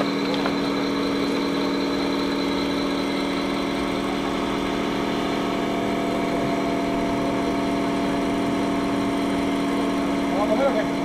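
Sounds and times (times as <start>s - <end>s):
model machine motor humming: 0.0s - 11.0s.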